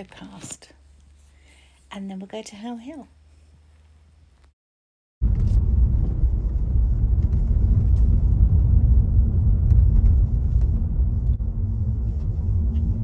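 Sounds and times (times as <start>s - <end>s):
car engine and road noise: 5.2s - 13.0s.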